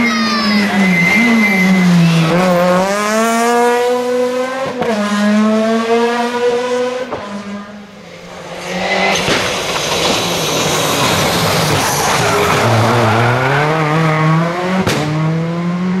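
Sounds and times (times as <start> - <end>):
thin tyre squeal: 0.0 - 3.1, 8.6 - 14.0
rally car engine accelerating: 0.6 - 16.0
rough noisy rush: 7.3 - 14.7.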